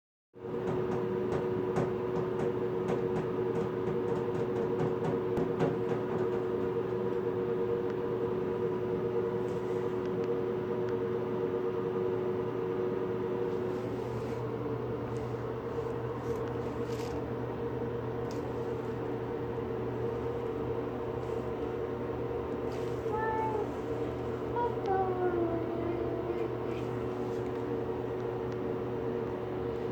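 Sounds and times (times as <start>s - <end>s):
steady mechanical hum: 0.4s - 29.9s.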